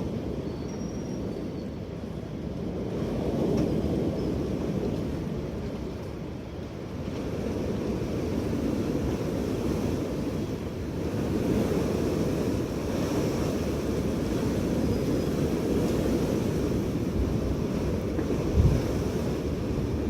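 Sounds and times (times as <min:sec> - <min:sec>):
strong wind blowing: 0:00.0 - 0:20.0.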